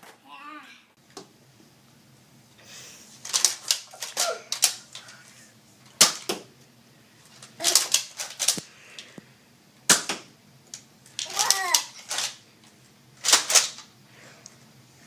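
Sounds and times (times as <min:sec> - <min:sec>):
toy blaster plastic clacks: 0:07.6 - 0:08.6, 0:11.1 - 0:12.4, 0:13.2 - 0:13.9.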